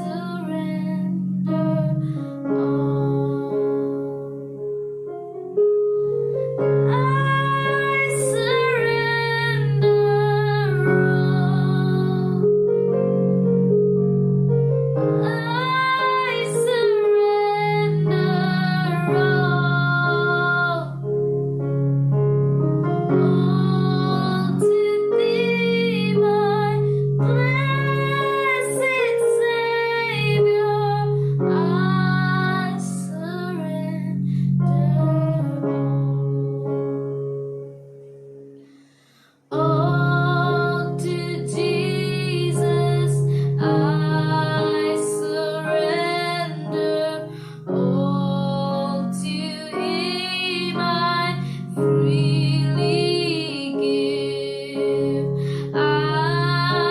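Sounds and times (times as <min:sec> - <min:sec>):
sustained keyboard chords: 0:00.0 - 0:38.6, 0:39.5 - 0:56.9
high voice singing with vibrato: 0:06.8 - 0:12.6, 0:15.2 - 0:21.0, 0:23.1 - 0:34.1.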